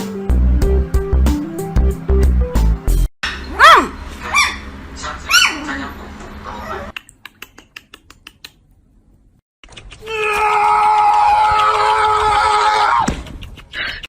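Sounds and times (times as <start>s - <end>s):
high-pitched animal calls: 3.2s - 5.7s.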